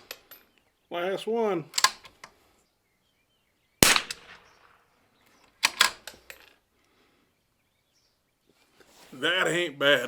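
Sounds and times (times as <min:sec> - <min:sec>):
metallic clicks of rifle bolt: 0:01.7 - 0:02.4, 0:03.8 - 0:04.5, 0:05.4 - 0:06.6
rifle shot: 0:03.8 - 0:04.8.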